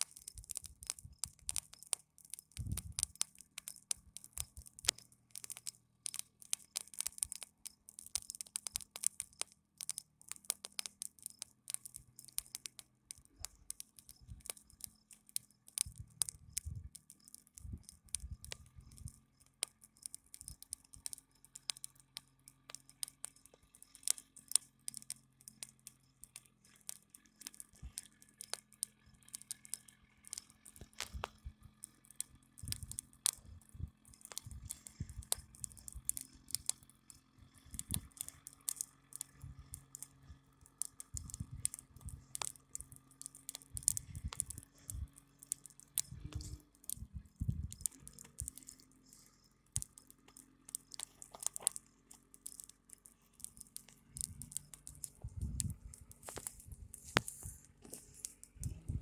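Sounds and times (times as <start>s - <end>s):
crackling and rustling: 0.0s - 59.0s
faint low engine drone: 17.6s - 59.0s.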